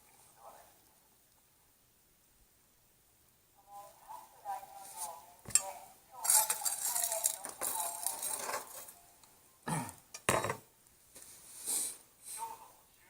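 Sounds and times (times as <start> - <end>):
hard objects clinking and knocking: 6.2 - 9.0, 10.2 - 10.7.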